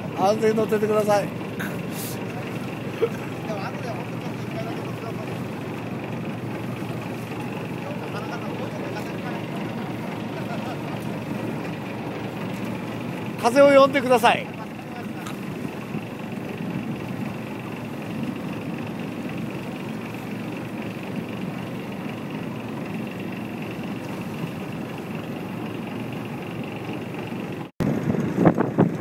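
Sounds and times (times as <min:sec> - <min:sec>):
motor drone with high whine: 0:00.0 - 0:29.0
wind buffeting microphone: 0:14.5 - 0:29.0.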